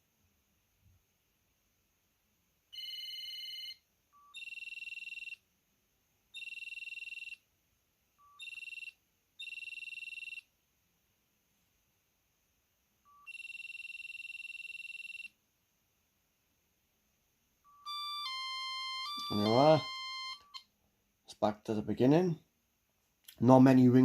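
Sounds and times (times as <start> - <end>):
trilling electronic phone ring: 2.7 - 5.4, 6.3 - 7.4, 8.2 - 10.5, 13.1 - 15.4, 17.6 - 20.7.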